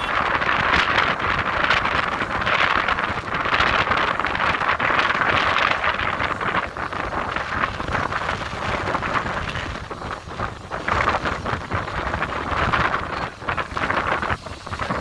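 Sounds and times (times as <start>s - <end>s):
wind buffeting microphone: 0.0s - 15.0s
jet engine roar: 10.8s - 15.0s.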